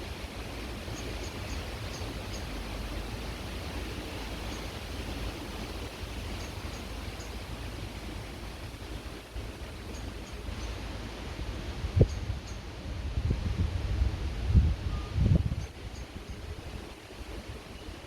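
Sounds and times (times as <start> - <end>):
creek water flowing: 0.0 - 11.9
wind rumbling on microphone: 0.0 - 18.0.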